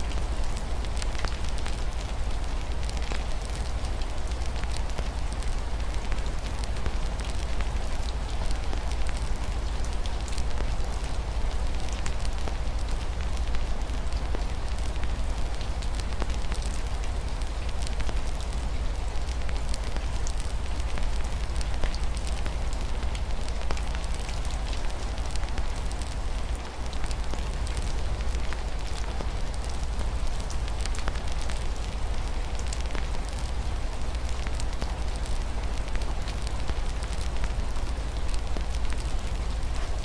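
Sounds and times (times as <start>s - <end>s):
rain on a window: 0.0s - 40.0s
wood fire crackling: 0.1s - 40.0s.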